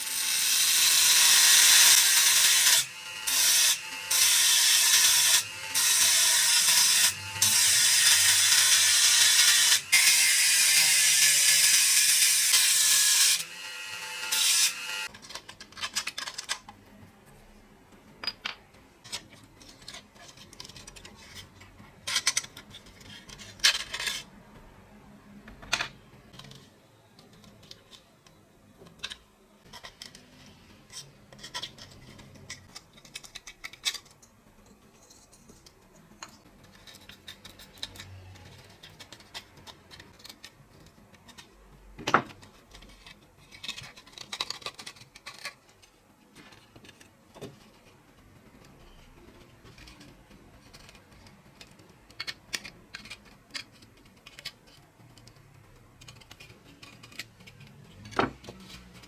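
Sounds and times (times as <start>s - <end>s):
metal parts clicking and scraping: 15.0s - 16.7s, 18.2s - 24.3s, 28.8s - 59.0s.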